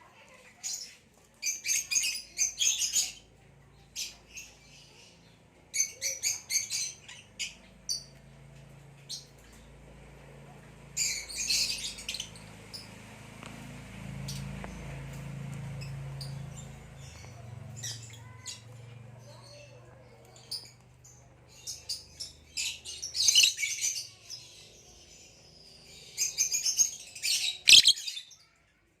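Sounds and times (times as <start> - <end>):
lovebird chirping: 23.0 - 24.0, 26.5 - 28.3.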